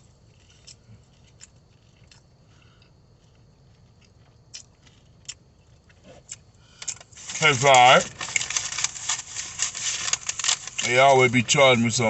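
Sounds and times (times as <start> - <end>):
faint chewing of fried chicken: 0.0 - 11.0.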